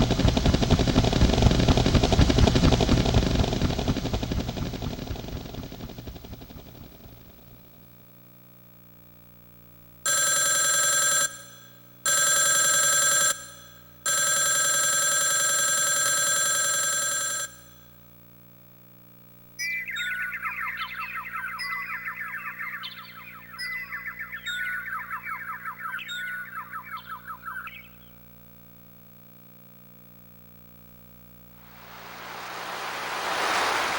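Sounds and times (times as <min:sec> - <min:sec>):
electronic ringing: 0:10.1 - 0:17.8
warbling chirping trill: 0:31.7 - 0:33.9.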